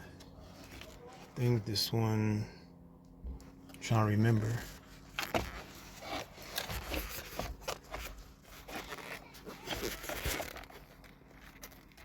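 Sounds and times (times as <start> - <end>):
plastic connectors rustling and clicking: 5.1 - 12.0.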